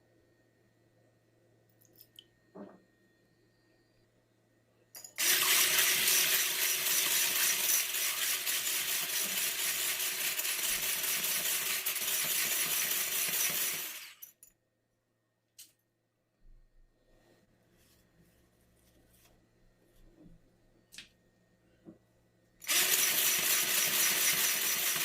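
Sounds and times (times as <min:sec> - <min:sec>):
electric mixer motor hum: 0:05.2 - 0:14.2, 0:22.6 - 0:25.0.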